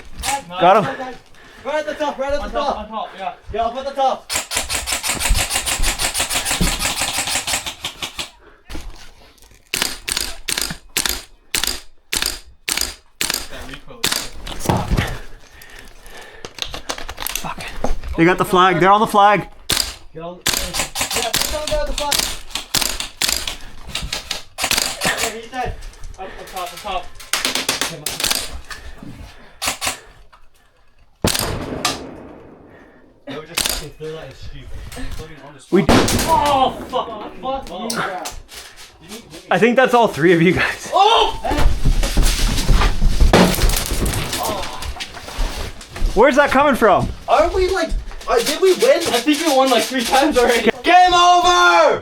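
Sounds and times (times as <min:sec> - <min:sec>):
airsoft rifle firing: 0:04.3 - 0:08.3, 0:09.7 - 0:15.1, 0:19.6 - 0:25.4, 0:27.3 - 0:28.7, 0:29.6 - 0:30.1, 0:31.2 - 0:34.1, 0:35.8 - 0:37.9.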